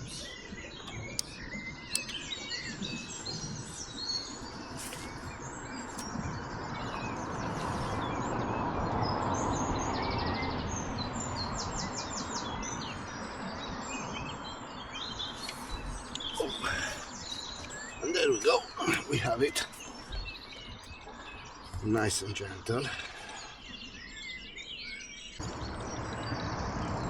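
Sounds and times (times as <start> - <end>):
small birds chirping and trilling: 0.0 - 27.0
steady rushing noise: 25.4 - 27.0.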